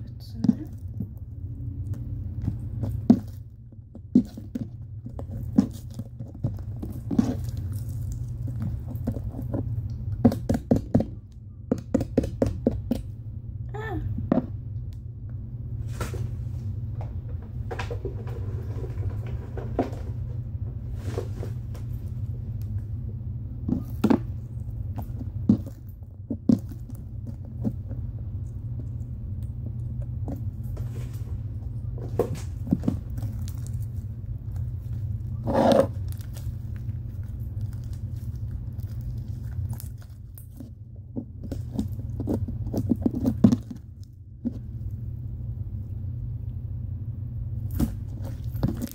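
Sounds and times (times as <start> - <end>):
slime squishing: 0.0 - 11.2, 23.6 - 45.7
steady low hum: 0.0 - 48.9.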